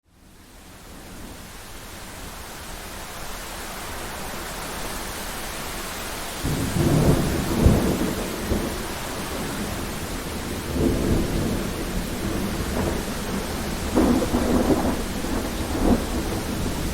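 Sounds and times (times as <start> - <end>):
rain and wind hiss: 0.1 - 16.9
thunder rumble: 6.4 - 16.9
sharp thunder crack: 10.5 - 16.8.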